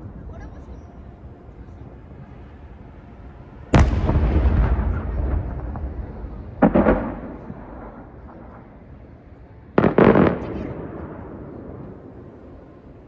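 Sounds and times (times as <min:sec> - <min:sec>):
fireworks booming and crackling: 0:03.5 - 0:13.0.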